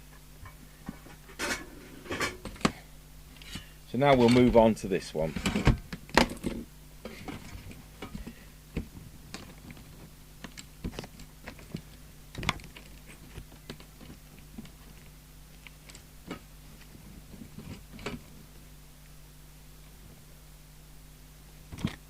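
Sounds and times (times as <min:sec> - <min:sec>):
faint low hum: 0:00.0 - 0:22.0
clicks and knocks of handled items: 0:03.4 - 0:04.6, 0:05.3 - 0:18.3, 0:21.7 - 0:22.0.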